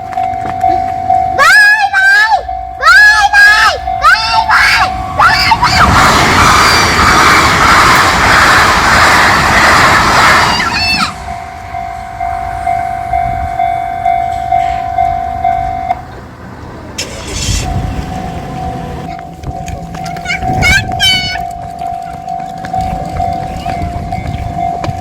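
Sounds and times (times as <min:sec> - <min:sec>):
crossing warning bell ringing: 0:00.0 - 0:06.0, 0:09.3 - 0:25.0
train passing: 0:00.0 - 0:25.0.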